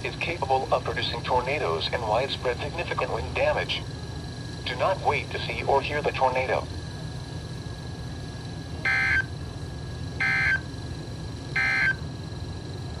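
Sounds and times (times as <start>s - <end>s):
steady low hum: 0.0s - 13.0s
buzzy digital squawks: 8.9s - 9.2s, 10.2s - 10.6s, 11.6s - 12.0s.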